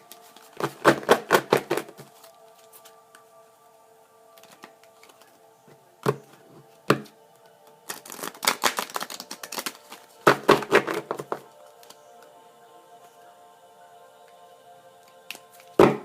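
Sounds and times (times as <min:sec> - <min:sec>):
soft background music: 0:00.0 - 0:16.0
cards tapping: 0:04.4 - 0:05.3
card shuffling clicks: 0:04.4 - 0:05.4.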